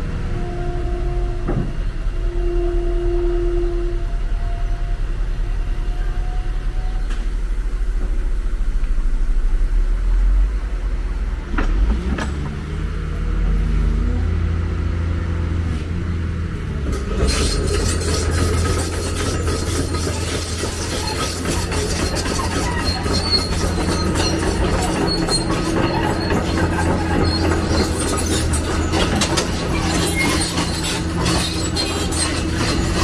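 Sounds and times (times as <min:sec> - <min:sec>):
diesel engine rumbling: 0:00.0 - 0:33.0
metallic clattering and squealing: 0:16.8 - 0:33.0.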